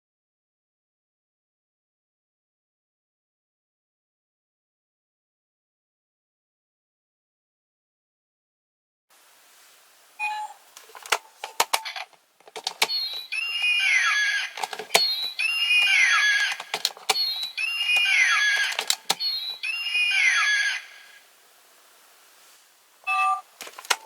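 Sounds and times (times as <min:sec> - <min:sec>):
plastic button clicks: 0:10.8 - 0:13.3, 0:14.6 - 0:19.4, 0:23.6 - 0:24.0
toy electronic sound effect: 0:11.6 - 0:21.2.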